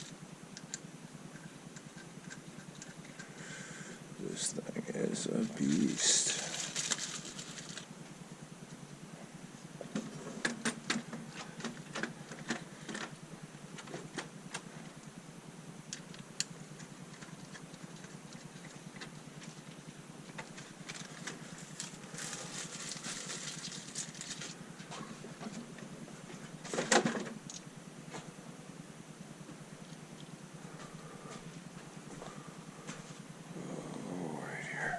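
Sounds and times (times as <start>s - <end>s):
rustling stretch: 5.6s - 7.9s.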